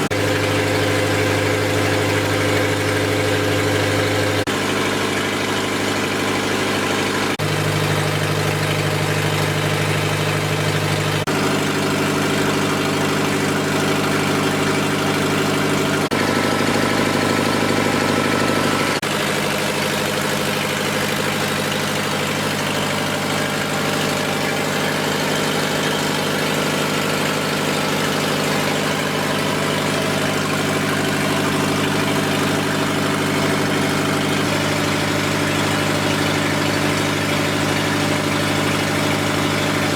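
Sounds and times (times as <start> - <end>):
diesel generator engine running: 0.0 - 39.9.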